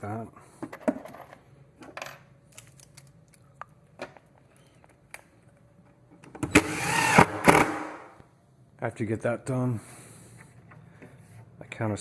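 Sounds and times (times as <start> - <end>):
power drill whining: 6.5 - 7.7.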